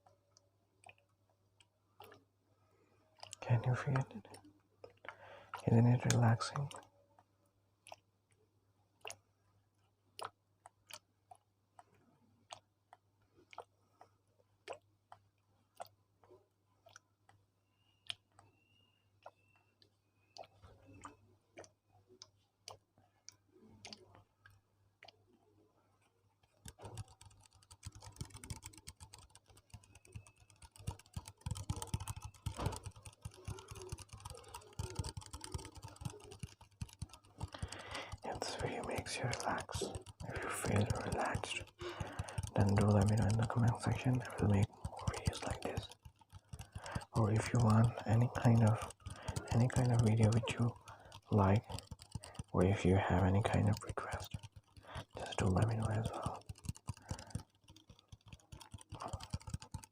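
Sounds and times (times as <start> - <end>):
rapid crackly clicks: 3.2 - 6.9, 26.4 - 59.9.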